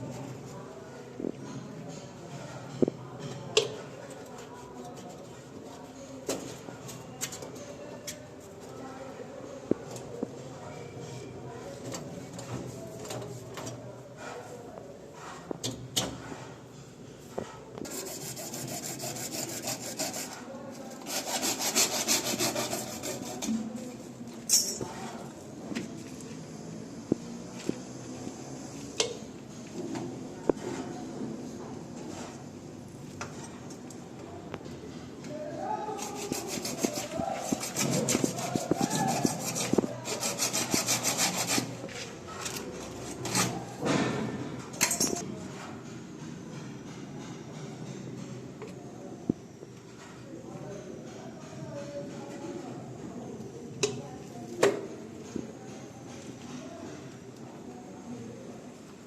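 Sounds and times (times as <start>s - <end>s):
hand saw rasping strokes: 17.8s - 23.6s, 36.0s - 41.8s.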